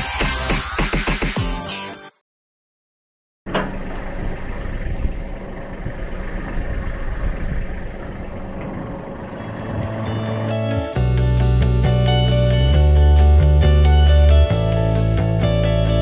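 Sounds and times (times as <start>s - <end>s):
music: 0.0s - 2.2s, 9.7s - 16.0s
engine running: 3.5s - 16.0s.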